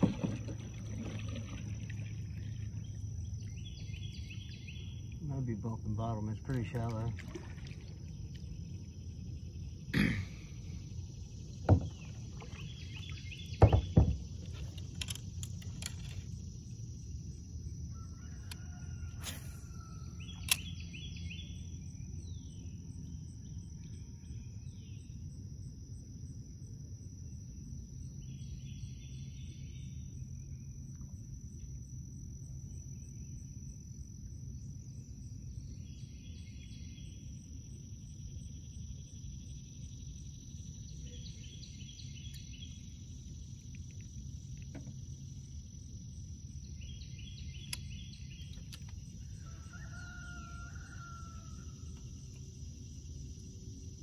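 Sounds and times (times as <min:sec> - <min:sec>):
steady high-pitched whine: 0:00.0 - 0:54.0
sharp knocks: 0:13.6 - 0:14.2.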